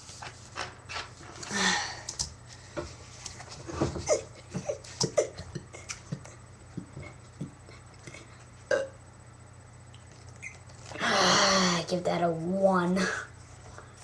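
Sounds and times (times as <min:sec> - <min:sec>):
person burping: 0:08.7 - 0:09.0.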